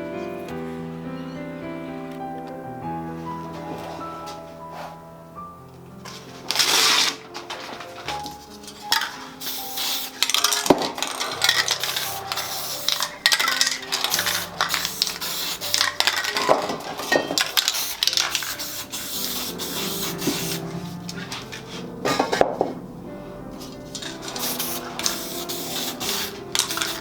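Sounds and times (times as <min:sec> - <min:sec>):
background music with sustained tones: 0:00.0 - 0:27.0
aerosol spray can hissing: 0:06.5 - 0:07.2, 0:08.1 - 0:21.8, 0:23.9 - 0:27.0.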